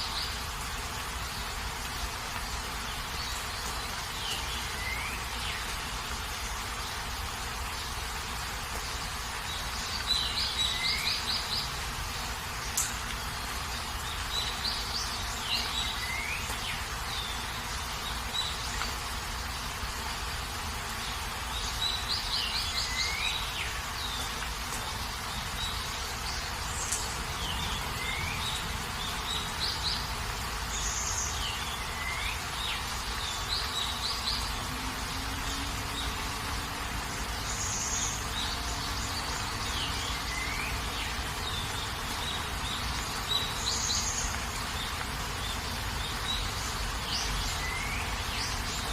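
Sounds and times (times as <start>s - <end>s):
steady rain: 0.0s - 48.9s.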